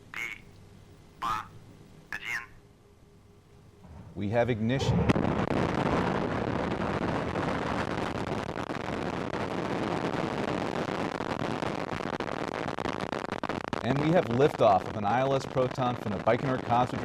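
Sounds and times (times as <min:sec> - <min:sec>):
constant crackle: 0:03.4 - 0:17.0
rocket engines firing: 0:03.6 - 0:17.0.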